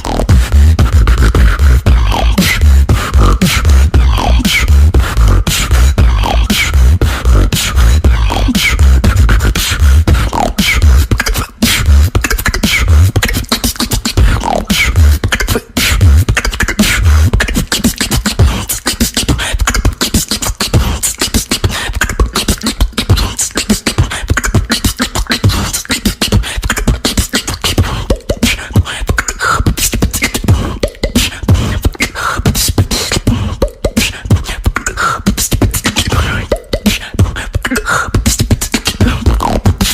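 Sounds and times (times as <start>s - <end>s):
person beatboxing: 0.0s - 39.9s.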